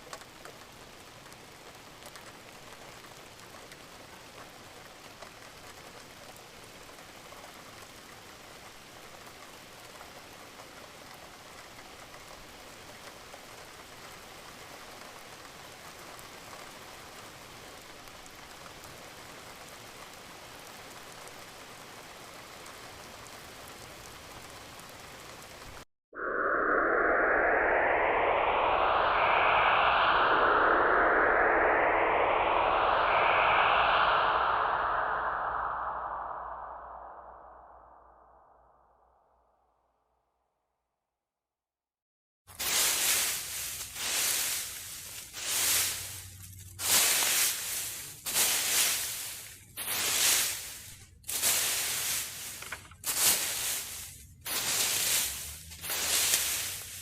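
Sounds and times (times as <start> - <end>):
steady rain patter: 0.0 - 25.8, 42.5 - 57.0
rising electronic effect: 26.2 - 38.7.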